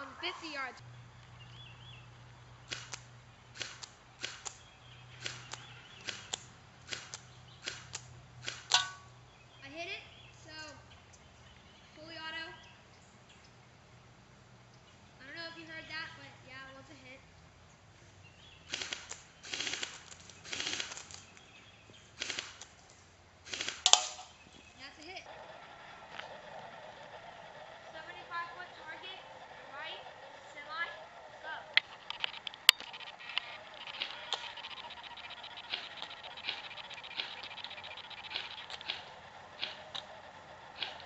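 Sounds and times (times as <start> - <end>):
airsoft rifle shots clicking: 2.6 - 9.2, 18.6 - 21.4, 22.1 - 22.8, 23.4 - 24.4, 31.7 - 41.0.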